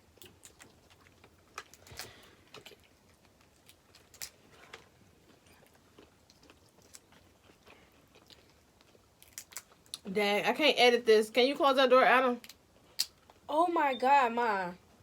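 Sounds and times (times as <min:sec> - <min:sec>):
chewing with mouth smacks: 0:00.0 - 0:10.0.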